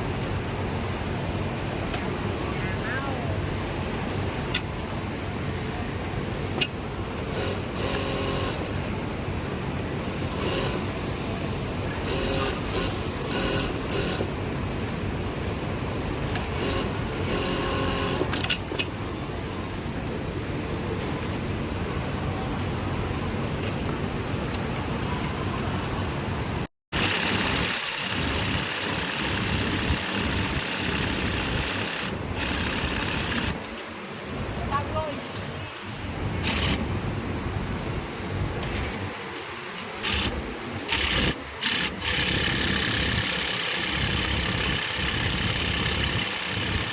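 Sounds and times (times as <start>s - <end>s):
steady factory hum: 0.0s - 46.9s
industrial sewing machines running: 7.3s - 8.7s, 10.2s - 11.0s, 11.9s - 14.4s, 16.5s - 18.3s, 27.0s - 33.6s, 36.4s - 36.8s, 40.0s - 46.9s.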